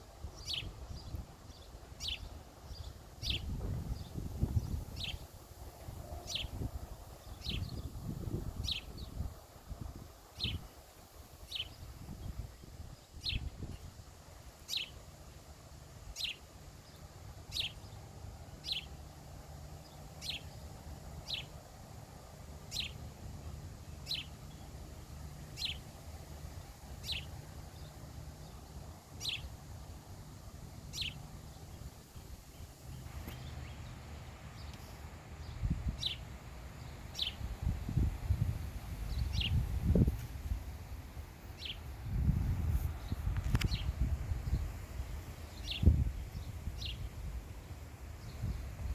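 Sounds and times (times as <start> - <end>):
bird chirping: 0.3 - 5.3, 6.2 - 9.3, 14.6 - 15.0, 16.1 - 19.1, 19.8 - 21.5, 22.7 - 23.1, 23.8 - 24.8, 25.5 - 25.9, 26.9 - 29.6, 30.8 - 37.5, 39.1 - 40.0, 41.5 - 42.2, 42.9 - 47.1.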